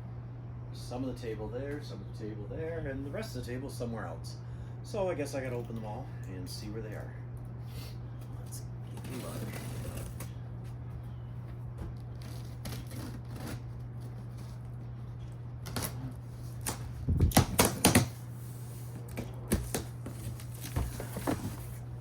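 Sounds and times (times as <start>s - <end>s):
steady low hum: 0.0s - 22.0s
cardboard packaging being handled: 8.9s - 10.3s, 11.9s - 22.0s.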